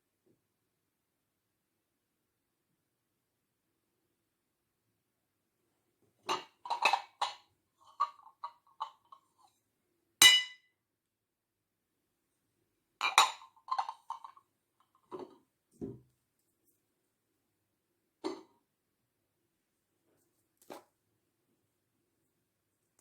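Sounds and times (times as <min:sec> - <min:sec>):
kitchenware clinking: 0:10.2 - 0:10.6, 0:13.0 - 0:14.3.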